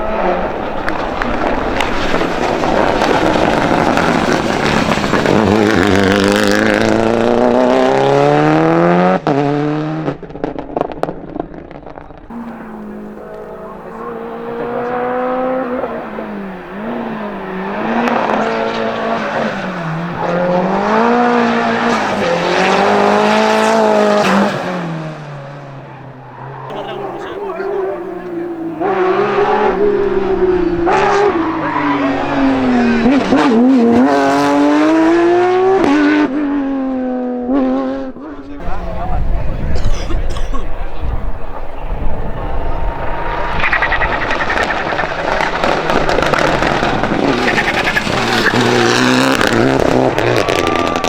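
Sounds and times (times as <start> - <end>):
exhaust crackle: 0.0 - 8.1, 10.1 - 25.1, 40.7 - 51.0
race car engine revving: 0.0 - 51.0.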